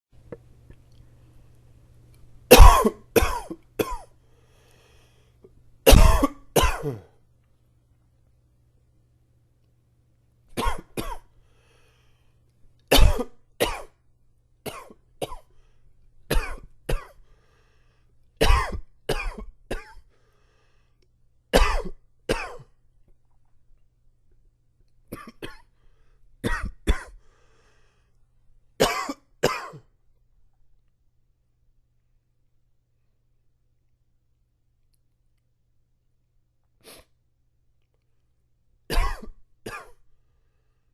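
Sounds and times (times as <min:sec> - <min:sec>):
man coughing: 0:02.5 - 0:04.1, 0:05.9 - 0:07.2, 0:12.9 - 0:13.9, 0:18.4 - 0:20.0, 0:21.6 - 0:22.6, 0:28.8 - 0:29.9, 0:38.9 - 0:40.0
faint breaths: 0:04.2 - 0:05.5, 0:11.3 - 0:12.5, 0:15.5 - 0:16.0, 0:17.2 - 0:18.2, 0:20.0 - 0:21.1, 0:25.7 - 0:26.4, 0:27.2 - 0:28.3, 0:40.1 - 0:40.9.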